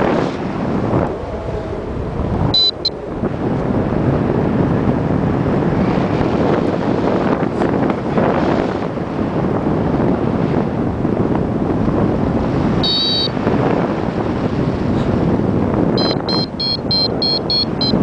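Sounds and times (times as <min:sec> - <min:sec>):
wind buffeting microphone: 0:00.0 - 0:18.0
short high electronic beeps: 0:02.6 - 0:02.9, 0:12.8 - 0:13.3, 0:16.0 - 0:18.0.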